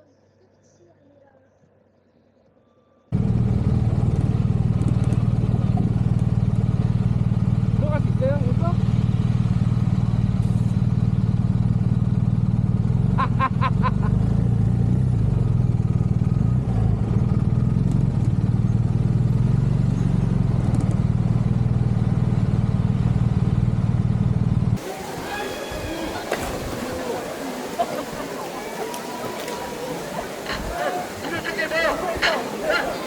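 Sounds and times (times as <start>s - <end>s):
motorcycle engine at low revs: 3.2s - 24.8s.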